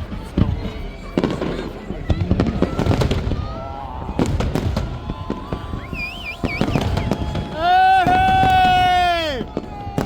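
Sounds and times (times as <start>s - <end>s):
fireworks bangs and crackling: 0.0s - 10.0s
warbling firework whistle: 2.6s - 9.6s.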